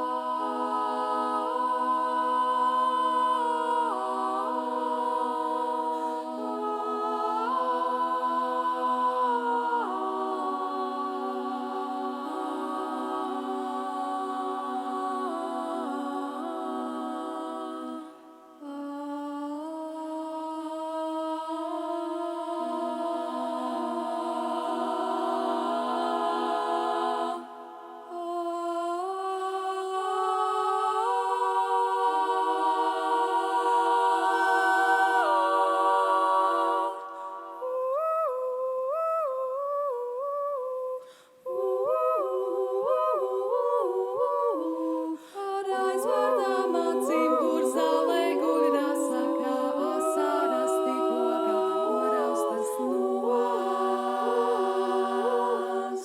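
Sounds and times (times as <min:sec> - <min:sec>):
vocal group humming chords: 0:00.0 - 0:19.0, 0:29.1 - 0:38.0, 0:41.0 - 0:56.0
voices singing bouncing syllables: 0:37.7 - 0:56.0.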